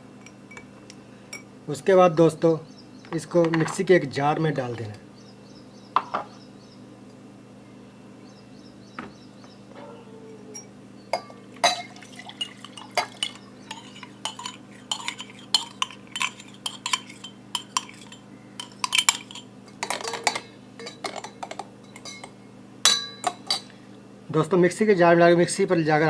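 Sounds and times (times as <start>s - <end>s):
spoon clinking against glass: 10.5s - 23.7s.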